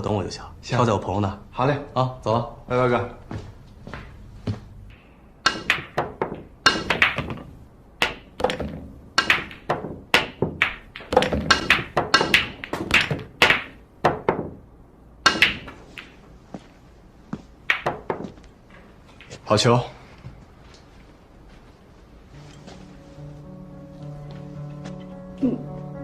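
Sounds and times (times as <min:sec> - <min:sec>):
cue tips striking balls: 0:05.4 - 0:14.6, 0:15.2 - 0:16.7, 0:17.6 - 0:19.4
billiard balls clacking: 0:05.5 - 0:14.6, 0:15.2 - 0:16.7, 0:17.6 - 0:19.5.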